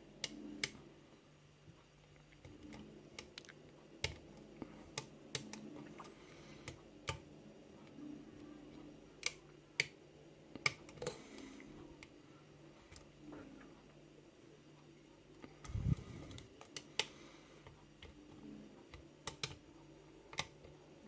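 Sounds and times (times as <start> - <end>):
lock pick clicking on pins: 19.2 - 19.6.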